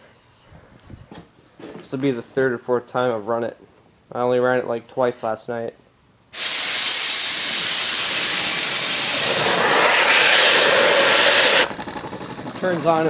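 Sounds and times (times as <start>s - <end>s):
compressed air hissing: 6.3s - 11.8s.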